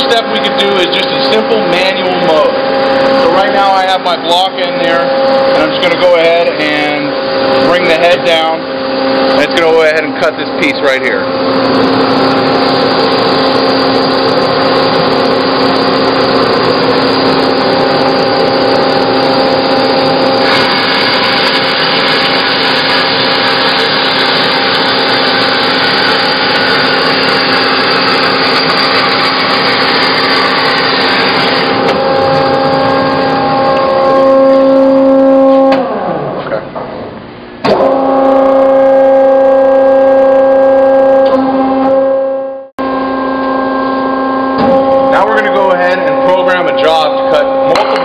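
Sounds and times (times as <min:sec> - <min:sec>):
machine humming: 0:00.0 - 0:48.0
bandsaw rasping through wood: 0:20.4 - 0:32.5.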